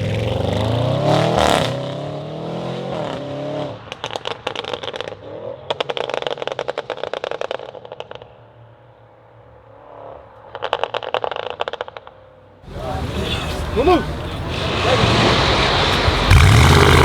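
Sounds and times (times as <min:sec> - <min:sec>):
car engine idling: 0:12.6 - 0:17.0
exhaust crackles and pops: 0:12.7 - 0:17.0.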